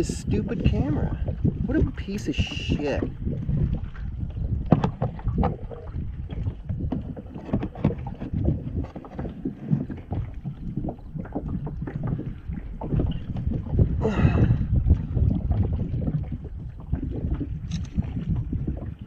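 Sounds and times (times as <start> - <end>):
water against a hull: 0.0 - 19.0
wind buffeting microphone: 0.0 - 19.0
knocks on a kayak: 4.6 - 5.6.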